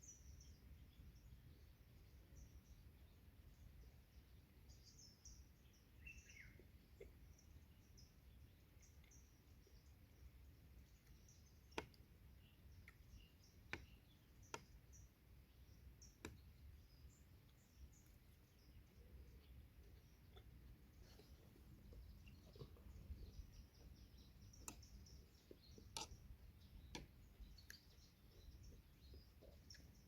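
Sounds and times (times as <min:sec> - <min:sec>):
distant birds chirping: 0:00.0 - 0:30.0
sharp clicks: 0:24.4 - 0:27.8.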